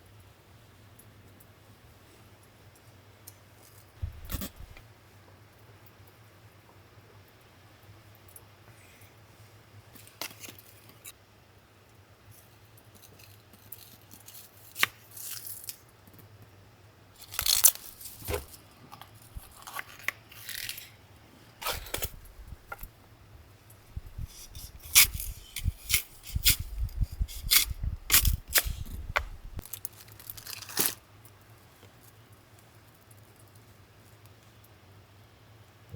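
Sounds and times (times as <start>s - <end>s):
tearing and crinkling: 13.0s - 15.8s, 17.2s - 21.0s, 21.6s - 22.8s, 24.2s - 31.1s
low rumble: 26.6s - 29.6s.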